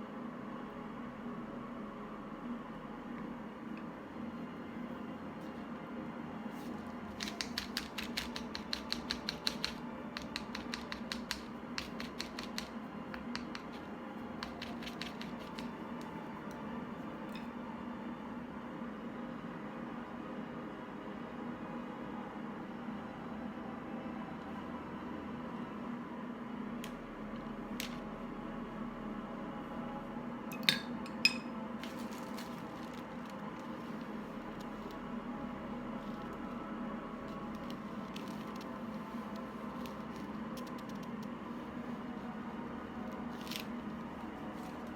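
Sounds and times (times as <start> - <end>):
steady low hum: 0.0 - 44.9
kitchenware clinking: 30.5 - 31.5.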